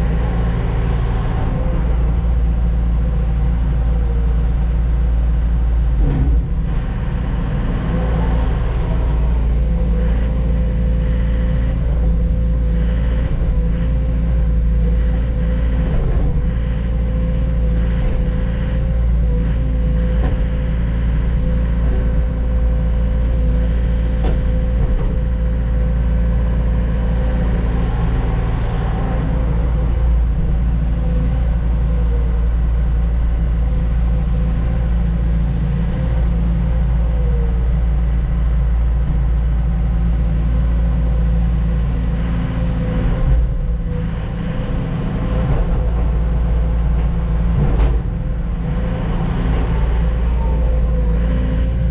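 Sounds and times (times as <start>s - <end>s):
diesel truck engine drone: 0.0s - 51.9s.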